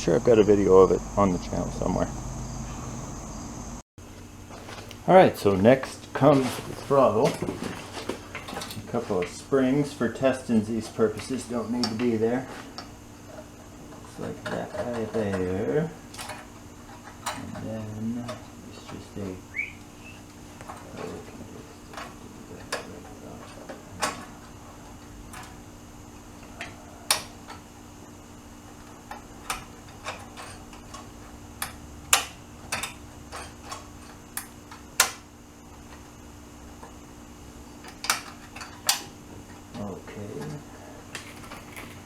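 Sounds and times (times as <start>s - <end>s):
steady low hum: 0.0s - 4.5s
metal parts clicking and clinking: 29.1s - 35.1s, 37.8s - 39.1s.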